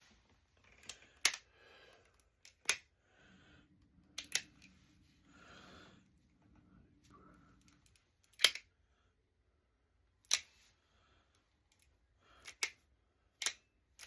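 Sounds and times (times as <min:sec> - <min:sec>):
revolver metallic clicks: 0:04.2 - 0:04.7, 0:07.6 - 0:08.7.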